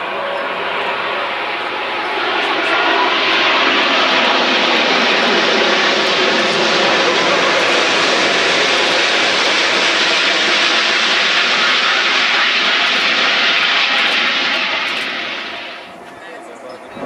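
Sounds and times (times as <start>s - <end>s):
jet engines roaring: 0.0s - 17.0s.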